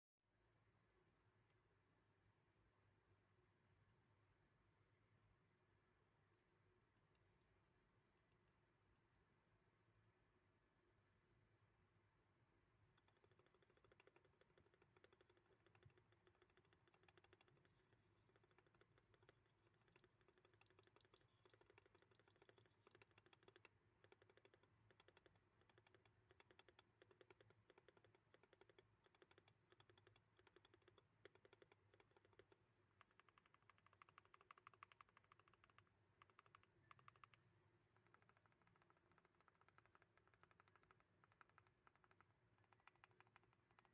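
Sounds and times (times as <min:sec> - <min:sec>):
fast mechanical keyboard typing: 0:13.0 - 0:43.9.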